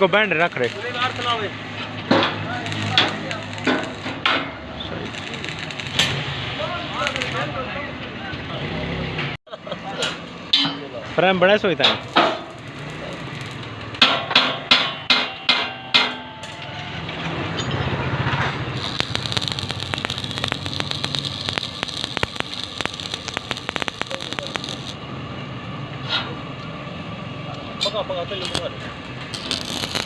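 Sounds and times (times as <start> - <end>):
arc welder crackling: 0.0 - 7.8, 11.5 - 14.8, 18.6 - 25.0, 27.8 - 30.0.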